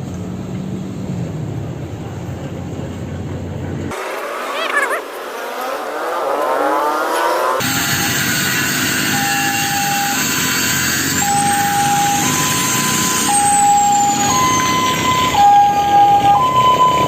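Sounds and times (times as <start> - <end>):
two-tone hi-lo siren: 7.3 - 17.0.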